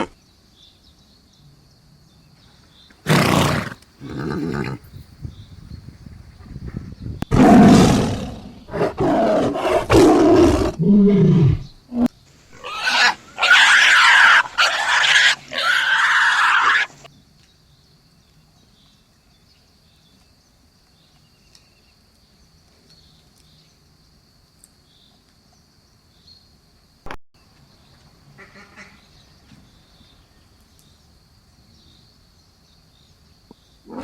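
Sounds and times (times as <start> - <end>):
duck quacking: 28.4 - 29.0.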